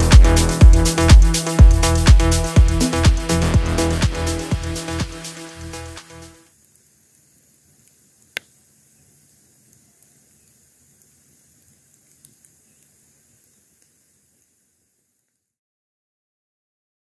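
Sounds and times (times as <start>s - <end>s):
faint background noise: 6.4s - 15.6s
faint ticks: 9.2s - 14.5s.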